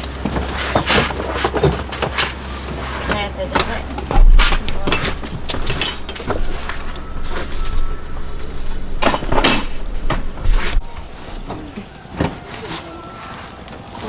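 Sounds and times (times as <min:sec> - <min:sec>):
steady low hum: 0:00.0 - 0:12.1
knocks and scraping: 0:00.0 - 0:13.9
faint music: 0:00.0 - 0:14.0.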